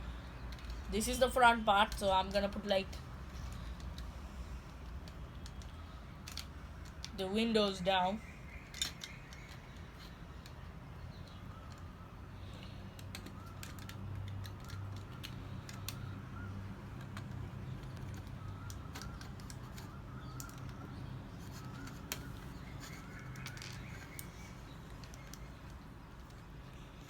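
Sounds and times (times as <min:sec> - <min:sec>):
plastic bricks clicking and clattering: 0:04.7 - 0:07.2, 0:12.6 - 0:16.2, 0:16.9 - 0:26.5.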